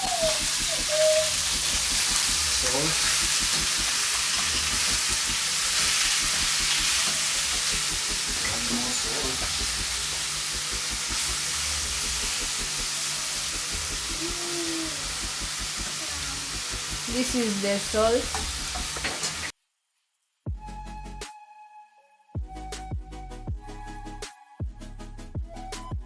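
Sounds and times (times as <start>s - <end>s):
meat sizzling in oil: 0.0s - 19.5s.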